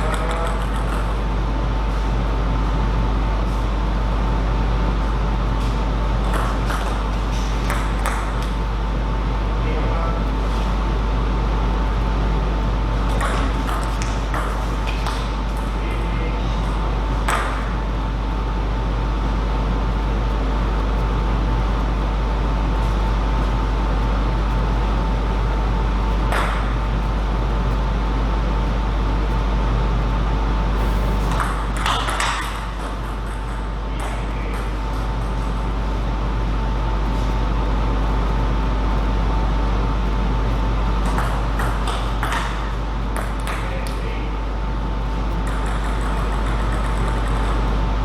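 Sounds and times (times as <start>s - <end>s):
table tennis ball hits: 0.0s - 1.2s, 6.2s - 8.6s, 13.1s - 16.0s, 17.2s - 17.8s, 26.2s - 26.7s, 31.2s - 35.4s, 41.0s - 44.0s, 45.4s - 47.6s
steady low hum: 0.0s - 48.0s.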